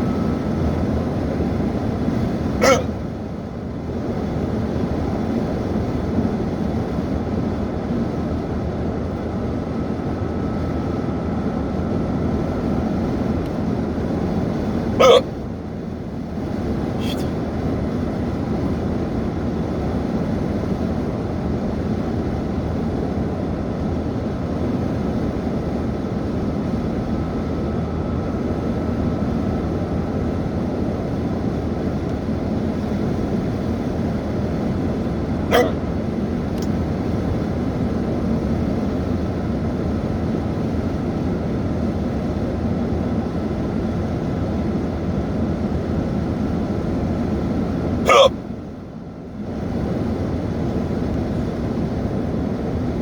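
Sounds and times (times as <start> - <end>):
person hiccuping: 2.6 - 3.0, 15.0 - 15.3, 17.0 - 17.3, 35.5 - 36.0, 48.1 - 48.3.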